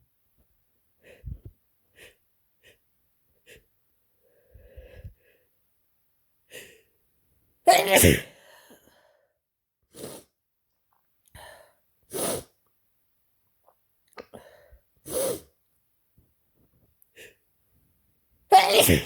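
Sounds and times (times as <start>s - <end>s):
short breath and nasal sounds: 4.2s - 5.4s, 9.9s - 10.4s, 11.4s - 12.6s, 14.2s - 15.6s
person sneezing: 7.7s - 8.4s, 15.1s - 15.4s, 18.5s - 19.0s.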